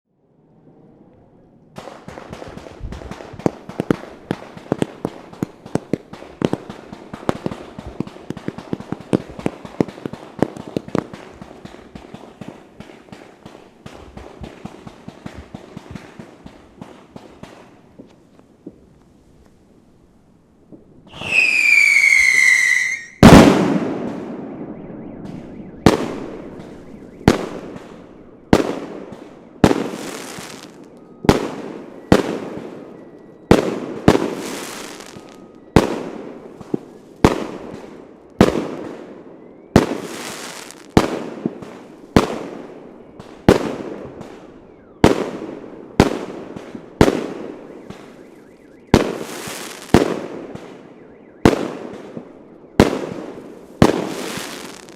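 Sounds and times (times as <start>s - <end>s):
firework bangs echoing: 1.8s - 18.1s, 21.1s - 32.9s, 33.5s - 39.2s, 39.8s - 54.9s
firework whistling: 21.1s - 54.9s.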